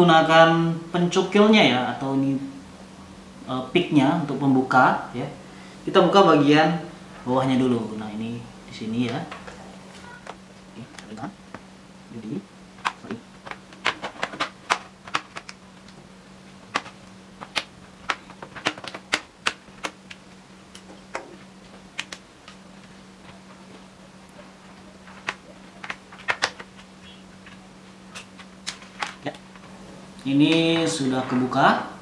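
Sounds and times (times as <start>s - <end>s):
faint low hum: 0.0s - 32.0s.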